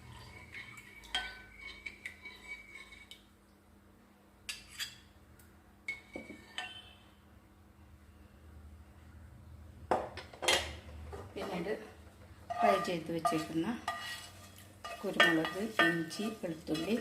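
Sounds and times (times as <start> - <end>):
utensils clinking against pot: 0.0 - 3.2, 5.9 - 7.0, 12.5 - 17.0.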